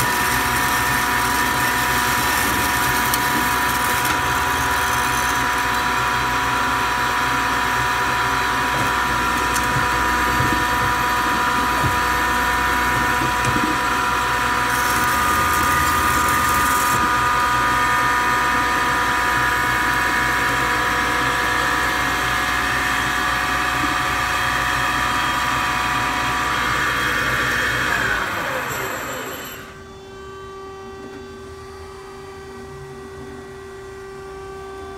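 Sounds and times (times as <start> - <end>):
band saw whining: 0.0 - 32.6.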